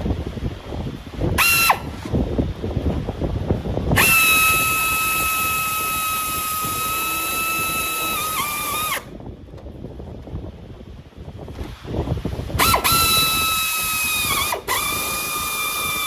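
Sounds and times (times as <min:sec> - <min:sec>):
power tool whining: 0:01.4 - 0:02.2, 0:03.9 - 0:09.2, 0:12.5 - 0:16.0.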